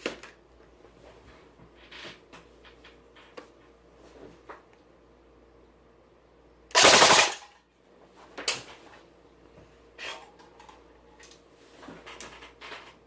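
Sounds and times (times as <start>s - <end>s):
airsoft rifle full-auto burst: 6.7s - 7.5s.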